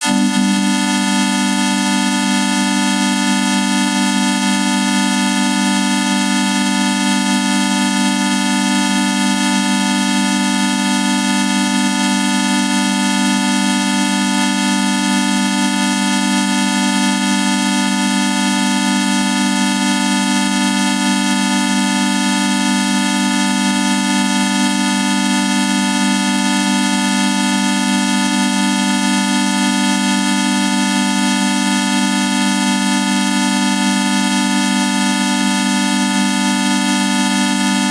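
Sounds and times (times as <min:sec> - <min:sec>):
synthetic electronic drone: 0:00.0 - 0:07.8.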